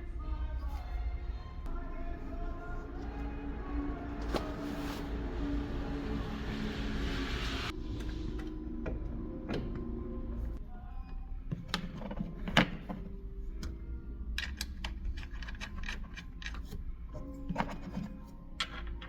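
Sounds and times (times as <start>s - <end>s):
steady low hum: 0.0s - 11.5s
tools clicking and knocking: 14.4s - 19.0s.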